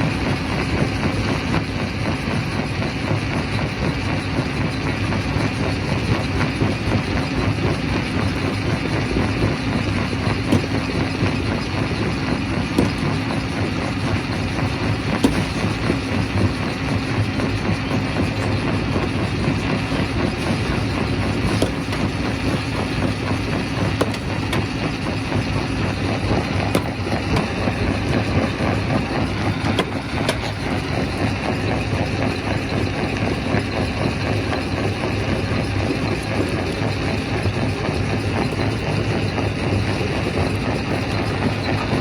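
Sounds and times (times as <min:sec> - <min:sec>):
rock crusher running: 0:00.0 - 0:42.0
rock striking metal: 0:10.3 - 0:16.3, 0:18.7 - 0:31.4.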